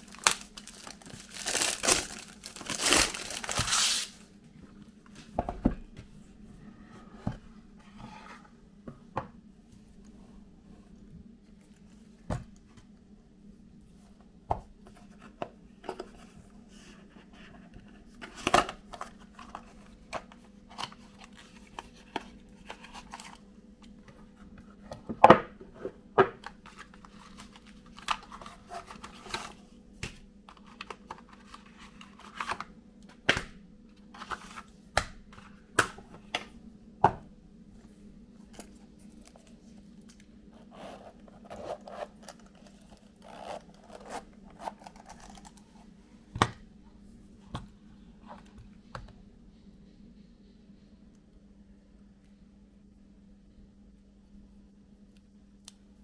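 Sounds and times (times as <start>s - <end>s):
packaging being opened: 0.0s - 4.2s
packaging tearing and scraping: 0.0s - 4.2s
faint steady hum: 0.0s - 56.0s.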